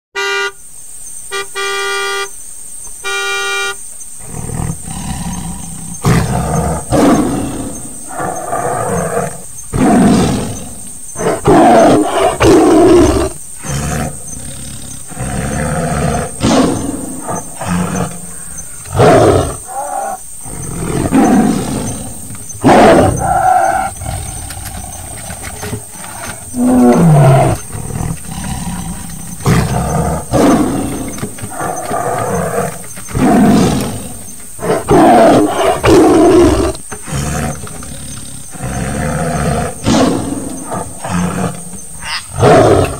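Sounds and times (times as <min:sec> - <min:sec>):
car horn beeps: 0:00.1 - 0:00.7, 0:01.3 - 0:03.9
tiger roaring and growling: 0:04.2 - 0:42.9.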